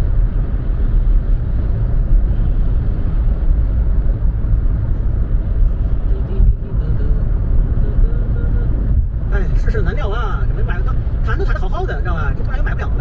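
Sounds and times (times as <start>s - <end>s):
road and tyre noise in car: 0.0s - 13.0s.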